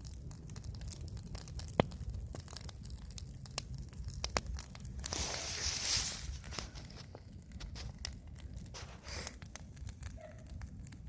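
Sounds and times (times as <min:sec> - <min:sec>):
fire crackling: 0:00.0 - 0:11.0
rush of hissing: 0:05.1 - 0:06.9, 0:08.8 - 0:09.4.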